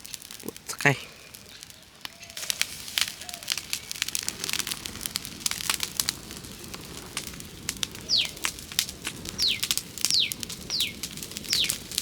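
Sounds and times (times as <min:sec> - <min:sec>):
wood fire crackling and popping: 0:00.0 - 0:12.0
bird whistled call: 0:08.0 - 0:08.4, 0:09.4 - 0:11.8.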